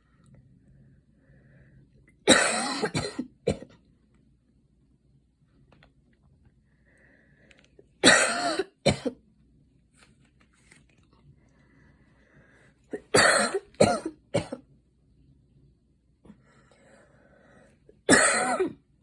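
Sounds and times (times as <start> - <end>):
woman coughing: 2.3 - 3.7, 8.0 - 9.2, 12.9 - 14.6, 18.1 - 18.8.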